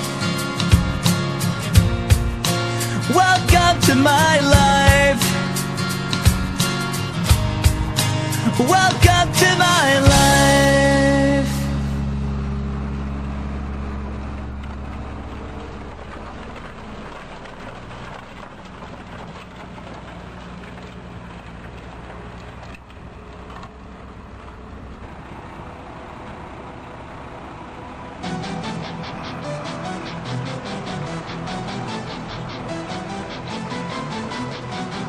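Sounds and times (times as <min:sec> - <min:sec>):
song: 0:00.0 - 0:12.3, 0:28.2 - 0:35.0
tractor engine under load: 0:00.0 - 0:35.0.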